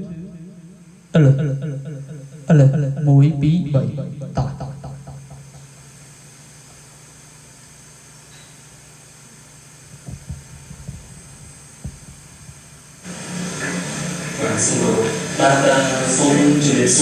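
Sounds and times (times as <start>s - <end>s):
amplifier hum and hiss: 0.0s - 17.0s
short low thumps: 9.9s - 13.0s.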